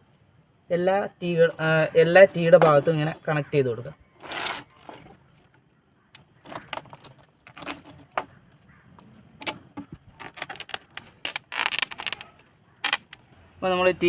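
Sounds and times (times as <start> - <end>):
plastic scraping and rubbing: 4.2 - 5.6, 6.2 - 13.2
plastic pipe fittings clicking: 4.2 - 13.2.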